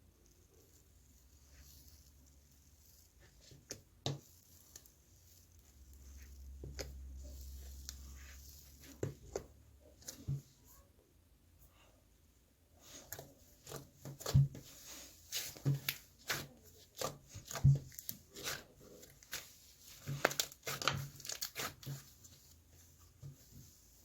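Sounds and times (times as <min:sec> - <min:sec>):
crinkling rustling and tapping: 0:13.7 - 0:22.4.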